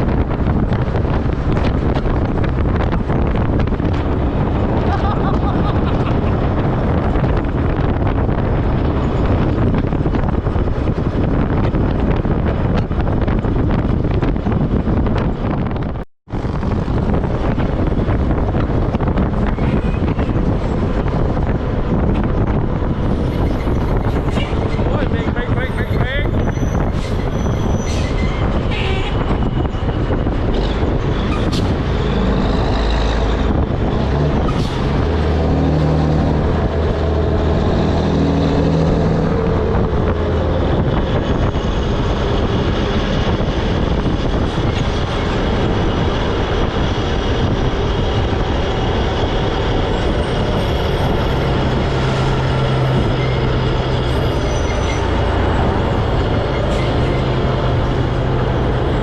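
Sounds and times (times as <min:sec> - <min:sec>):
road noise: 0:00.0 - 0:59.0
wind rushing on microphone: 0:00.0 - 0:59.0
truck diesel engine drone: 0:28.5 - 0:59.0.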